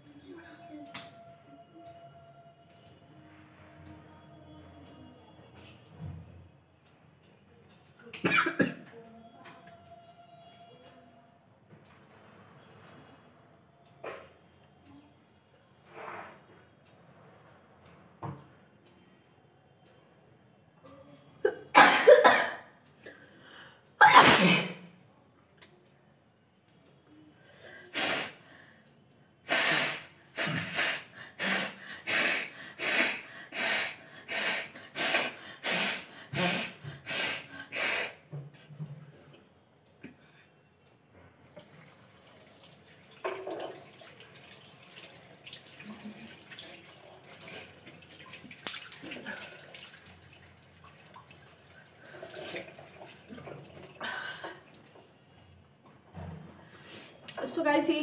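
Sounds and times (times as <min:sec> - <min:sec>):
person blowing nose: 0:27.9 - 0:28.4, 0:29.5 - 0:38.2
tap water running into basin: 0:41.4 - 0:54.0
noisy water bursts: 0:41.5 - 0:54.0.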